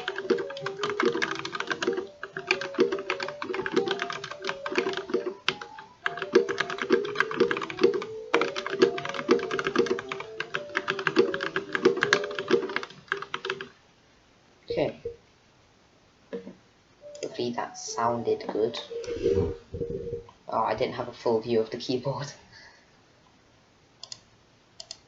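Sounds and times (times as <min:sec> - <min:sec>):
fast mechanical keyboard typing: 0:00.0 - 0:13.7.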